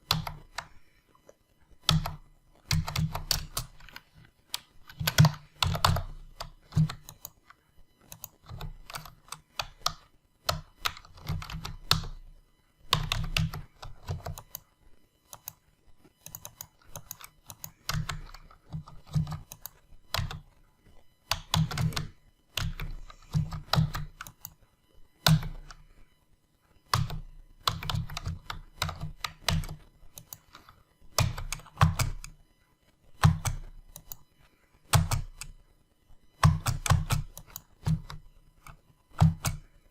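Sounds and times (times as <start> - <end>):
typing on computer keyboard: 0.0 - 0.8, 1.8 - 7.4, 8.0 - 12.2, 12.9 - 14.6, 15.3 - 15.6, 16.2 - 20.4, 21.3 - 24.6, 25.2 - 25.8, 26.9 - 32.4, 33.2 - 34.2, 34.9 - 35.6, 36.4 - 39.6.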